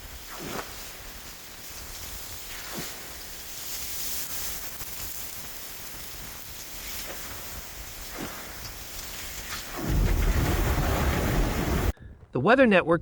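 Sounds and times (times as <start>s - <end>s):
wind hiss on microphone: 0.0s - 10.3s.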